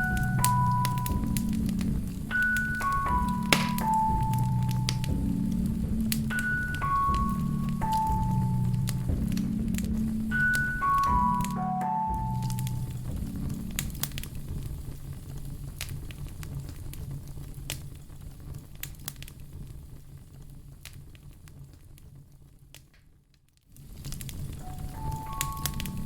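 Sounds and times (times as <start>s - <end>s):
soft music notes: 0.0s - 14.8s, 23.9s - 26.0s
wood fire crackling and popping: 0.0s - 26.0s.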